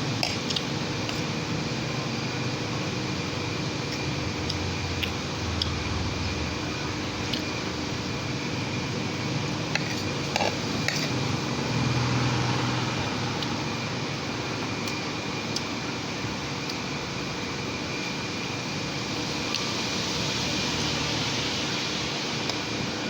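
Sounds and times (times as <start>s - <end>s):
faint high whine: 1.4s - 10.2s
low hum: 3.2s - 9.3s.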